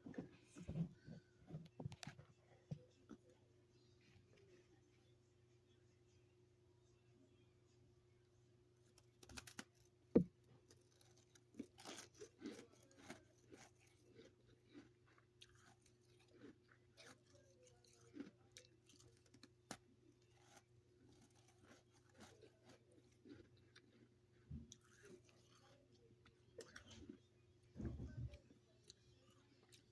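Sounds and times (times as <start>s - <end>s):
person chewing frost: 8.9s - 29.9s.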